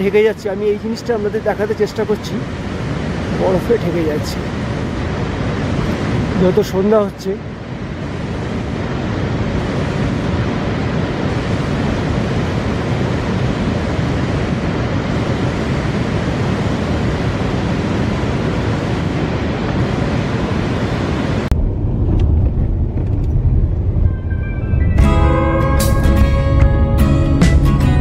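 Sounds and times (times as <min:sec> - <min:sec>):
wind buffeting microphone: 0:00.0 - 0:27.0
low rumble: 0:21.5 - 0:27.8.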